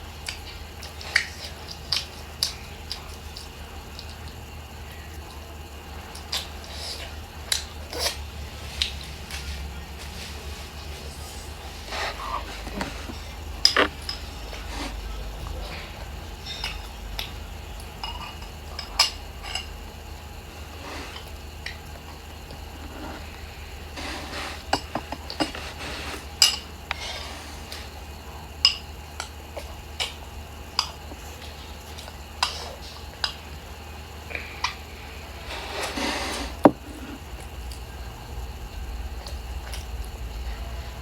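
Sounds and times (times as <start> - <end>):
utensils clinking against dishes: 11.2 - 19.8
utensils scraping dishes: 22.7 - 27.8, 35.4 - 37.3.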